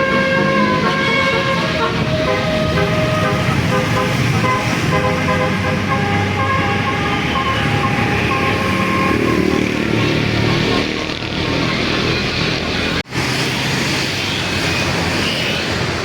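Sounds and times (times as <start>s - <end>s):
multi-tone air horn tune: 0.0s - 12.4s
bus engine rumble: 0.0s - 16.0s.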